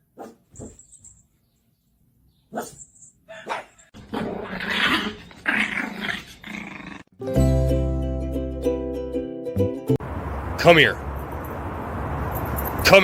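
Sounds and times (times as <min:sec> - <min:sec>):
dog barking: 0:00.0 - 0:00.8, 0:02.5 - 0:03.9
dog growling: 0:03.3 - 0:07.1.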